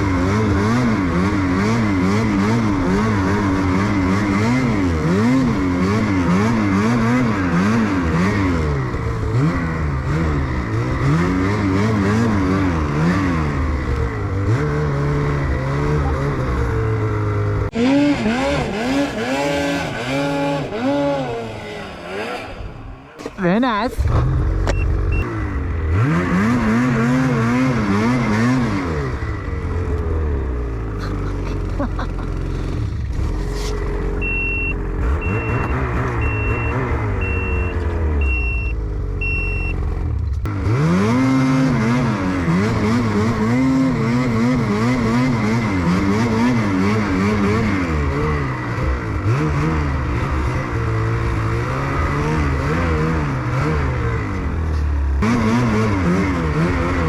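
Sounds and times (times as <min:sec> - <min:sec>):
snowmobile engine revving: 0:00.0 - 0:57.0
short electronic beeps: 0:24.7 - 0:25.3, 0:34.2 - 0:39.8.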